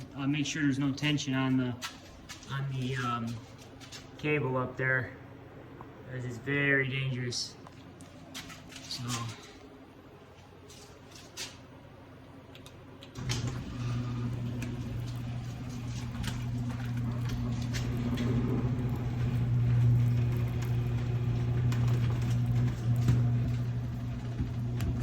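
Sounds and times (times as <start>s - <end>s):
garage door opener motor hum: 13.0s - 25.0s.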